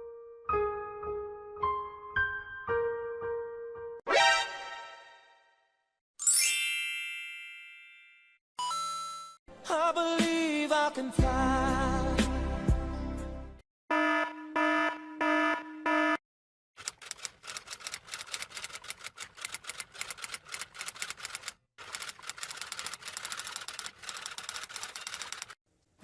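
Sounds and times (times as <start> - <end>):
rapid key clicks: 16.8 - 25.6.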